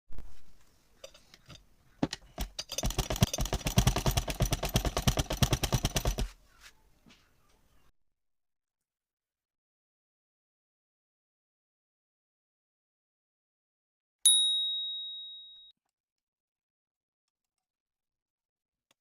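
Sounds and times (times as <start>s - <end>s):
sewing machine running: 2.7s - 6.3s.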